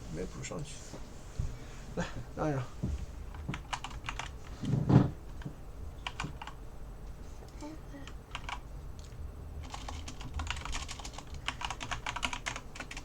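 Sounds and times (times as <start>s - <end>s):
keyboard typing: 3.3s - 4.4s, 5.4s - 6.6s, 8.0s - 13.0s.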